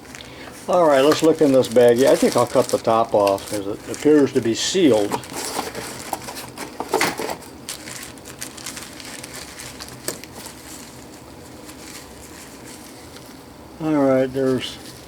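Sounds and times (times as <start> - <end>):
plastic bag crinkling: 0.0 - 13.4.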